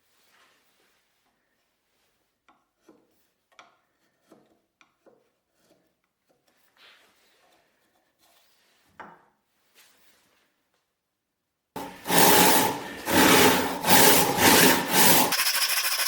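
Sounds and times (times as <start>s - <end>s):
hand tool rubbing on wood: 11.8s - 16.0s.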